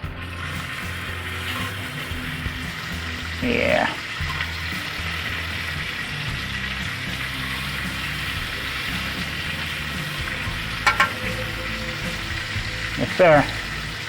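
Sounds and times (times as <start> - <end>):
background music: 0.0 - 14.0
steaks sizzling in a pan: 0.1 - 14.0
short metallic knock: 10.9 - 11.2.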